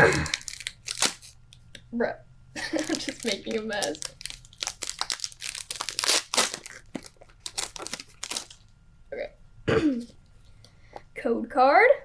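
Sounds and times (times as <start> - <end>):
foil wrapper tearing and crinkling: 0.0 - 1.6, 2.6 - 8.7.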